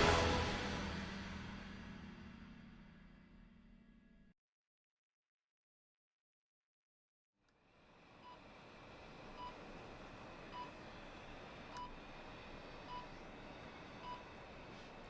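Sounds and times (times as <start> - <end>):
faint room hum: 7.5 - 15.0
patient monitor beeping: 9.4 - 9.6, 10.5 - 10.8, 12.8 - 13.2, 14.0 - 14.4.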